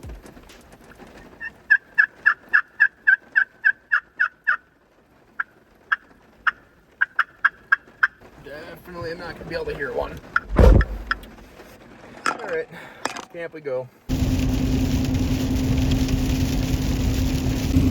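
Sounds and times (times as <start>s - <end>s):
turkey call yelps: 1.4s - 4.6s, 5.4s - 8.2s.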